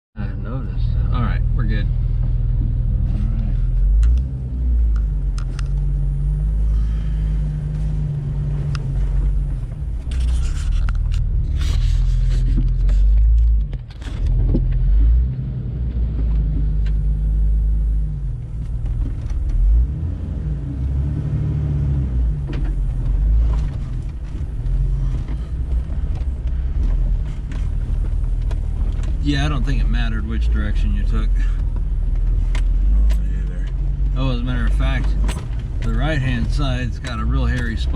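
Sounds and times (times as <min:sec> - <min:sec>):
vehicle engine at low revs: 0:00.2 - 0:37.9
knocks and rattles: 0:34.9 - 0:37.9.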